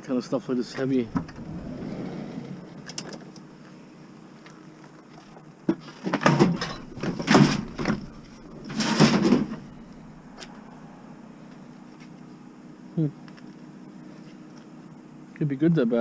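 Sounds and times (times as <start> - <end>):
heavy scrap scraping and dragging: 0.9 - 4.0, 6.3 - 10.7.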